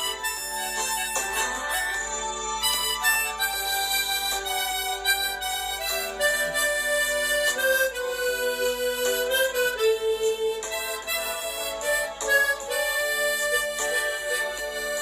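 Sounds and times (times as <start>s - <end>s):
harmonica slow melody: 0.0s - 15.0s.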